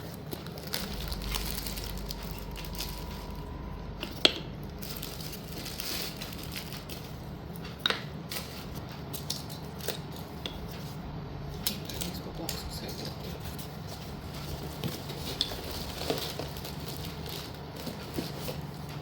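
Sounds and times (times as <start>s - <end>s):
packaging rustling and crinkling: 4.8s - 7.3s, 13.9s - 19.0s.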